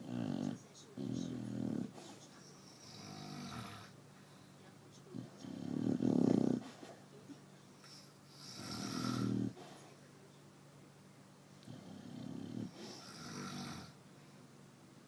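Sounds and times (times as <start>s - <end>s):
dog snoring: 0.0s - 4.0s, 5.1s - 6.8s, 7.8s - 9.8s, 11.6s - 14.0s.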